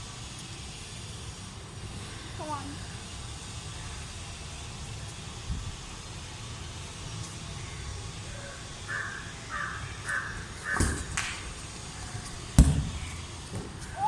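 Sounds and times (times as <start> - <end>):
outdoor background noise: 0.0 - 14.0
bird calling: 7.6 - 11.2, 11.9 - 14.0
football being kicked: 12.5 - 14.0.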